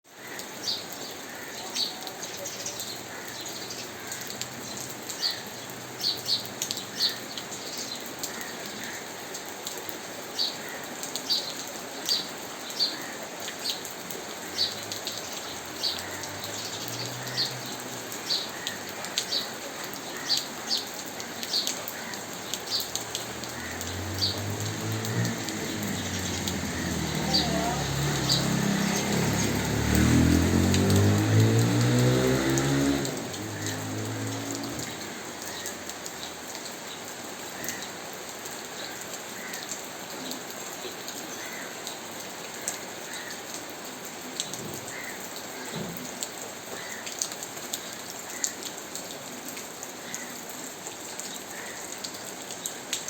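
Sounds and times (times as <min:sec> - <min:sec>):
steady rain: 0:00.0 - 0:53.0
low notes rising in steps: 0:24.0 - 0:34.7.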